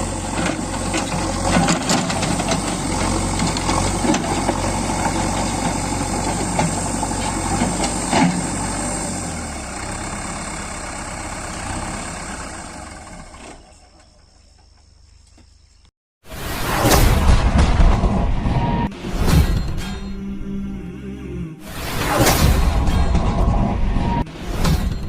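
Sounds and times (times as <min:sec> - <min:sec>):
diesel engine running: 0:00.0 - 0:14.6.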